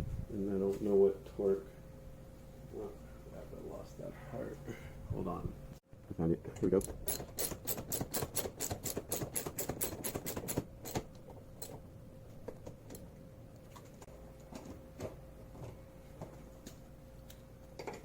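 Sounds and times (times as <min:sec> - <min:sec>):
socket ratchet clicking: 0:06.8 - 0:11.0.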